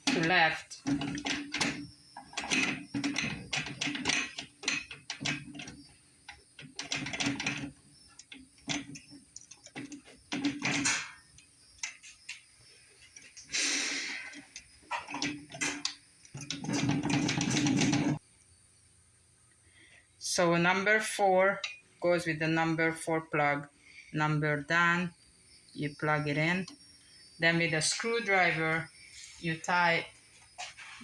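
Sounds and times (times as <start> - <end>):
clicks knocks and rattles of units: 0.0 - 12.4, 14.5 - 18.2.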